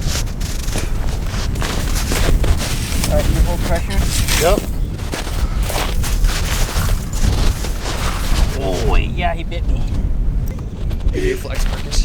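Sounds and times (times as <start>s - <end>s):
short scuffing noises: 0.0s - 8.9s
heavy steady rumble: 0.0s - 12.0s
wind buffeting microphone: 0.0s - 12.0s.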